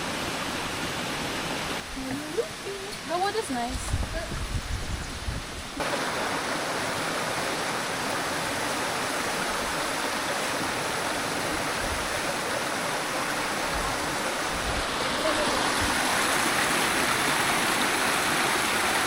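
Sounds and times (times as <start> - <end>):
waterfall rushing: 5.8 - 19.0.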